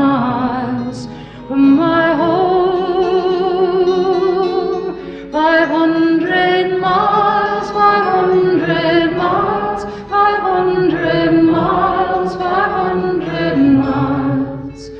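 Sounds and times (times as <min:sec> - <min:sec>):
voices singing held notes: 0:05.6 - 0:14.9.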